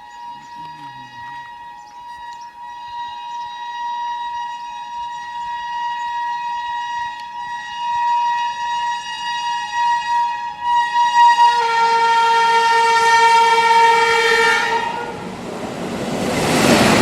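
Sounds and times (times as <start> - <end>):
train horn long steady note: 0.0 - 16.0.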